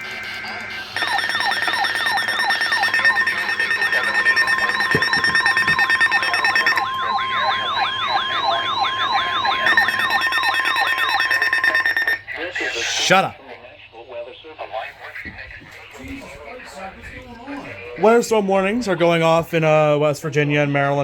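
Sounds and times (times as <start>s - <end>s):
beeping tones: 0.0s - 13.3s
falling siren-like chirps: 0.0s - 13.3s
long steady alert tone: 0.0s - 13.4s.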